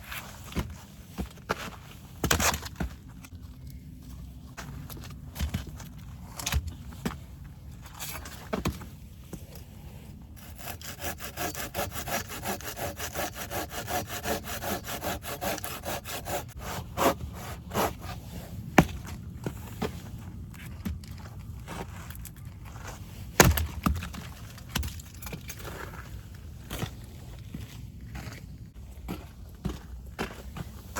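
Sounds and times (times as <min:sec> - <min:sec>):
hand saw cutting wood: 0:10.4 - 0:18.2.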